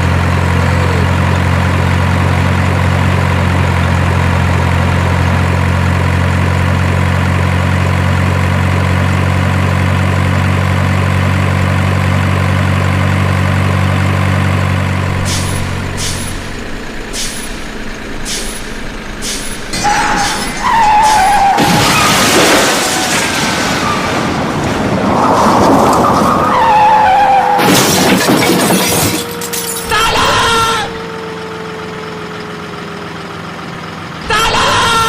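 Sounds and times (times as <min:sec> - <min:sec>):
truck engine running: 0:00.0 - 0:35.0
squeal sliding in pitch: 0:18.3 - 0:22.0.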